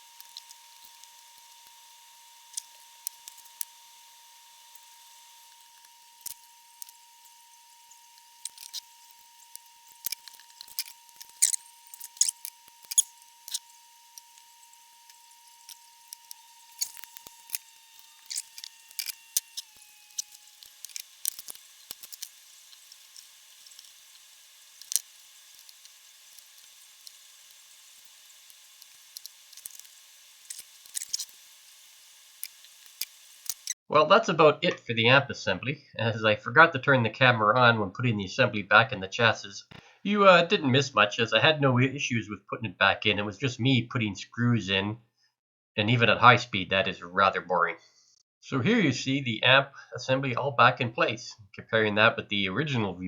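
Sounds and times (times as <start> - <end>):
faint high whine: 0.0 - 31.3
small sharp clicks: 32.4 - 33.8.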